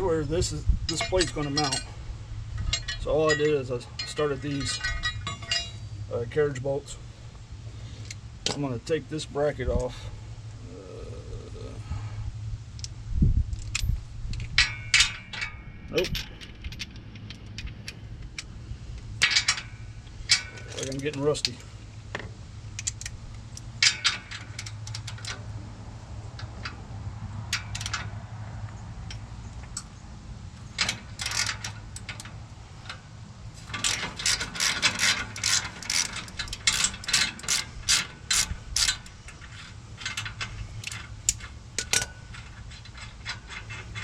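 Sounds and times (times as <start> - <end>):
low steady hum: 0.0 - 44.0
ratchet wrench clicking: 33.6 - 44.0.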